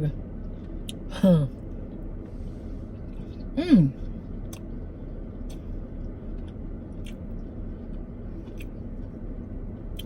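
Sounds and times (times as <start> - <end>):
low steady background hum: 0.0 - 10.0.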